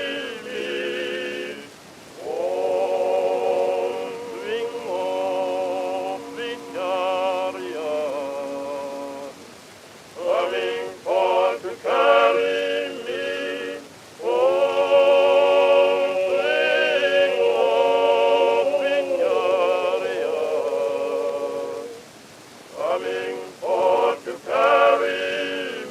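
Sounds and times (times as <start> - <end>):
person singing wordless notes: 0.0 - 9.5, 10.2 - 22.0
slow blues gospel music: 10.2 - 22.0, 22.7 - 25.9.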